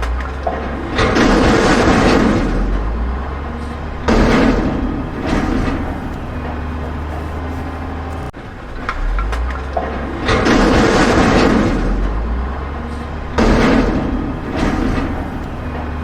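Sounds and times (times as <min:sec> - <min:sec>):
dump truck engine droning: 0:00.0 - 0:16.0
loud noisy engine surges: 0:00.0 - 0:16.0.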